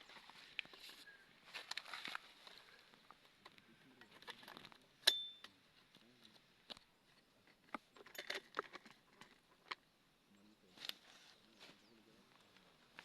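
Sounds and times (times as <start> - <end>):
sharp ringing metal clink: 5.0 - 5.5
metal parts clicking and clinking: 8.0 - 9.3.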